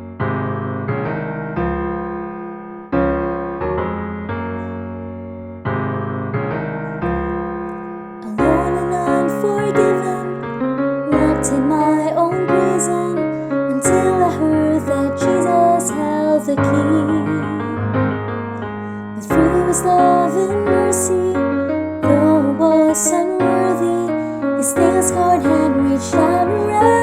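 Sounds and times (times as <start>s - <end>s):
piano chords ringing: 0.0s - 27.0s.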